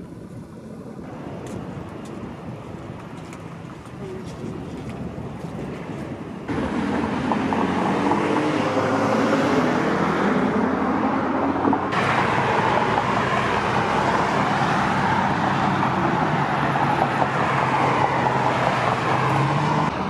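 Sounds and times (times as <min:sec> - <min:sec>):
cars going by: 0:00.0 - 0:20.0.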